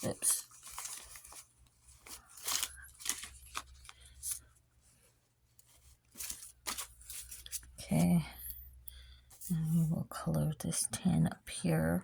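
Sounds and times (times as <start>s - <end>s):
paper banknotes rustling: 0.0s - 8.0s.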